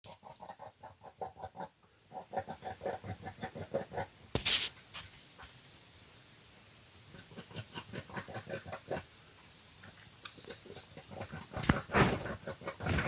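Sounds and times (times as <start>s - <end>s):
brief hiss: 4.4s - 5.7s
animal making rapid short sounds: 11.1s - 13.0s.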